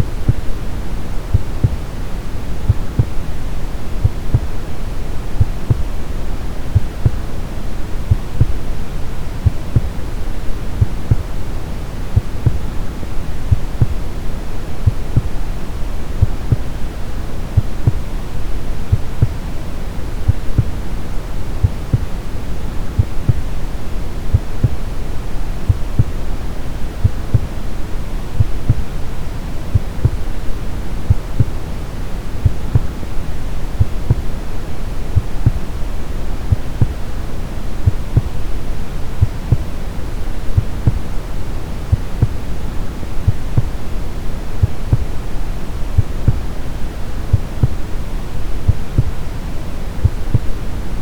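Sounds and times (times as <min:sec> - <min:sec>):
heartbeat thumps: 0:00.0 - 0:01.9, 0:02.6 - 0:03.3, 0:04.0 - 0:07.4, 0:08.0 - 0:08.8, 0:09.4 - 0:11.4, 0:12.1 - 0:14.2, 0:14.8 - 0:15.4, 0:16.1 - 0:16.8, 0:17.4 - 0:18.1, 0:18.9 - 0:19.4, 0:20.2 - 0:21.0, 0:21.6 - 0:22.2, 0:22.9 - 0:23.5, 0:24.2 - 0:25.0, 0:25.6 - 0:26.2, 0:27.0 - 0:27.6, 0:28.4 - 0:29.0, 0:29.7 - 0:31.6, 0:32.4 - 0:33.0, 0:33.7 - 0:34.4, 0:35.1 - 0:35.8, 0:36.5 - 0:37.0, 0:37.8 - 0:38.6, 0:39.2 - 0:39.8, 0:40.4 - 0:41.1, 0:41.9 - 0:43.9, 0:44.6 - 0:45.3, 0:45.9 - 0:46.6, 0:47.3 - 0:47.9, 0:48.7 - 0:49.2, 0:50.0 - 0:50.8
brown noise hiss: 0:00.0 - 0:51.0.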